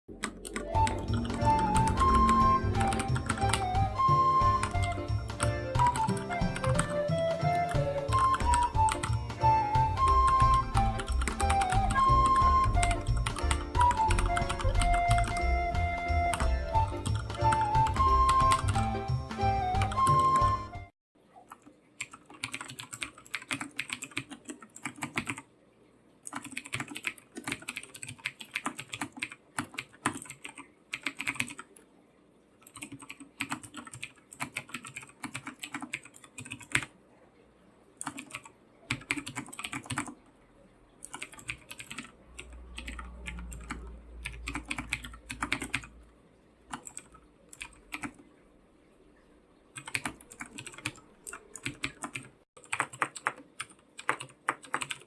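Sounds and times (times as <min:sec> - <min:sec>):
typing on computer keyboard: 0:00.2 - 0:03.8, 0:04.6 - 0:15.5, 0:21.5 - 0:25.5, 0:26.2 - 0:31.8, 0:32.6 - 0:36.9, 0:38.0 - 0:40.2, 0:41.0 - 0:45.9, 0:46.7 - 0:48.2, 0:49.8 - 0:55.0.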